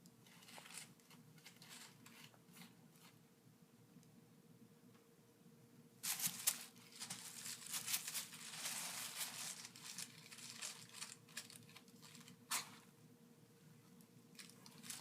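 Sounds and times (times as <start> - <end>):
plastic bag crinkling: 6.0 - 12.7, 14.3 - 15.0.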